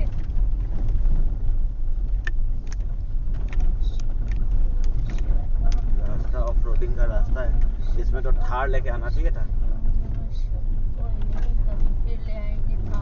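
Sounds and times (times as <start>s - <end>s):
knocks and rattles: 0.0s - 8.0s
car driving on dirt track: 0.0s - 13.0s.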